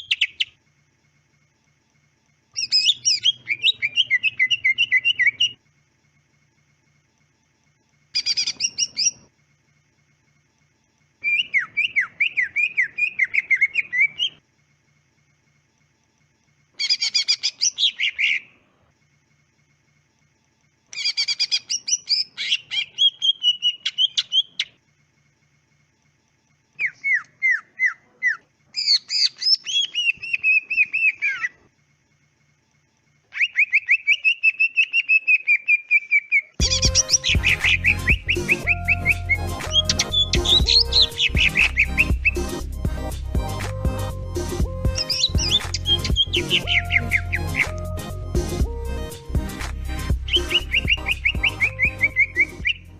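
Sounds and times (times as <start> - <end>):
bird singing whistled notes: 0.0 - 0.6, 2.6 - 5.6, 8.2 - 9.2, 11.2 - 14.4, 21.0 - 24.8, 26.8 - 31.6, 33.3 - 42.6, 44.7 - 47.9, 50.2 - 52.9.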